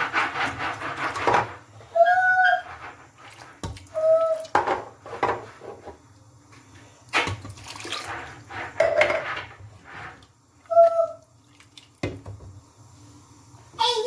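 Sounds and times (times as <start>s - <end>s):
liquid sloshing: 7.2s - 10.2s.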